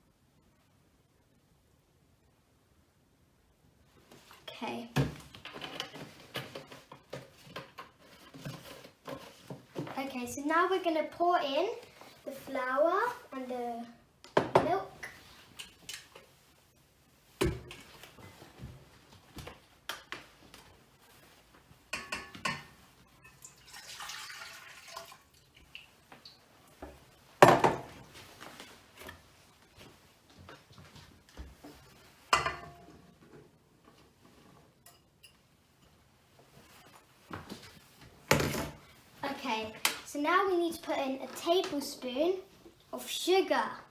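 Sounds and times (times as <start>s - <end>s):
liquid pouring into bowl: 23.2s - 26.4s.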